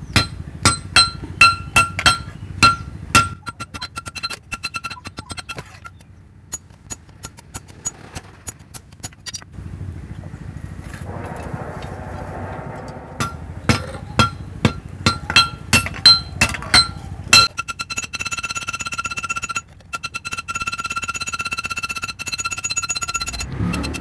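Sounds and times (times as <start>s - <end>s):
hammer striking metal on anvil: 0.0s - 3.6s, 11.1s - 17.5s.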